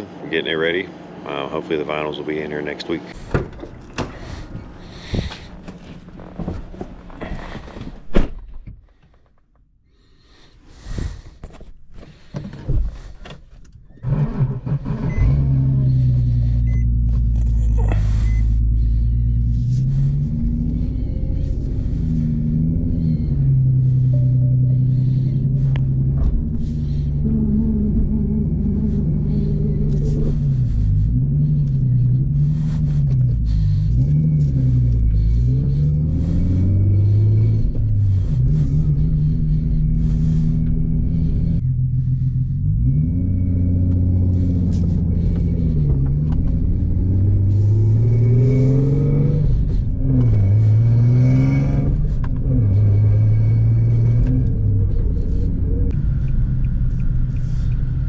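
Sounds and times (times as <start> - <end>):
car engine revving: 14.0 - 58.0.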